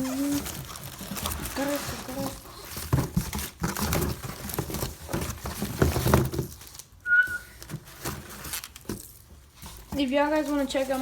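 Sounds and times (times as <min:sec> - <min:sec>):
knocks and rustling of handling: 0:00.0 - 0:11.0
high whistle-like tone: 0:07.0 - 0:07.5.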